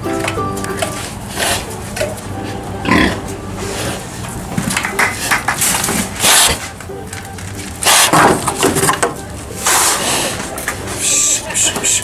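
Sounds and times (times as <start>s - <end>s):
pigs grunting: 1.3s - 4.4s.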